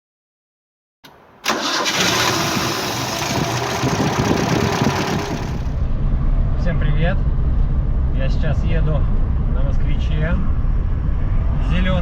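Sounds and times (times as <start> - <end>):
car engine starting: 1.4 - 5.8.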